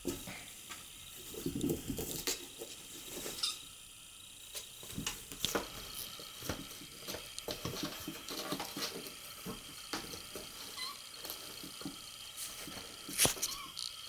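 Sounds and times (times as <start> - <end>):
kitten scratching cardboard box: 4.5 - 13.8.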